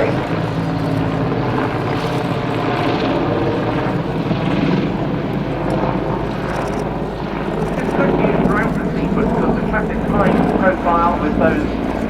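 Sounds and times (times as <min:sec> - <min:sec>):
helicopter rotor and turbines: 0:00.0 - 0:12.0.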